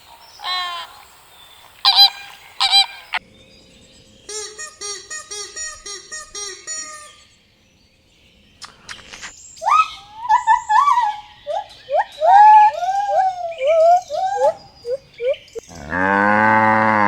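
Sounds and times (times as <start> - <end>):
high rising chirping calls: 0.0 - 16.0
animal honking calls: 1.8 - 3.2.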